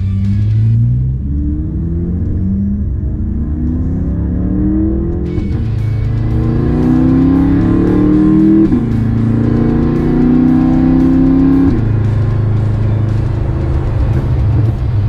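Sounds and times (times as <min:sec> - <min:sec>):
car engine accelerating hard: 0:00.0 - 0:15.0
music playing: 0:00.0 - 0:15.0.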